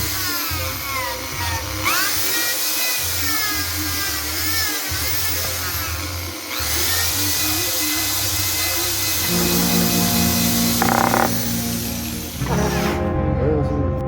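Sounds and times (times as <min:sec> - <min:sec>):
electric drill motor whine: 0:10.8 - 0:11.4
valve grinding in seat: 0:10.8 - 0:11.4.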